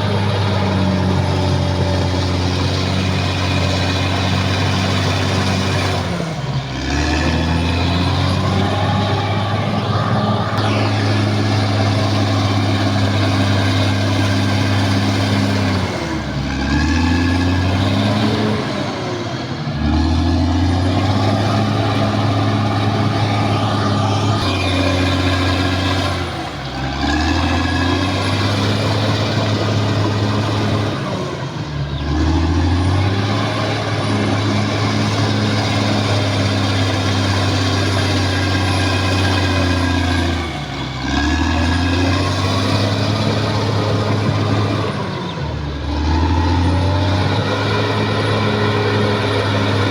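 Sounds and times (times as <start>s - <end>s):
bulldozer diesel engine running: 0.0s - 49.9s.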